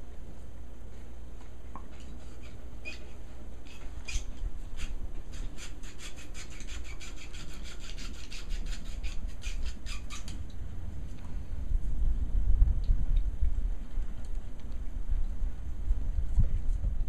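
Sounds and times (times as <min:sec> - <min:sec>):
dog teeth scraping bone: 0:01.9 - 0:10.4.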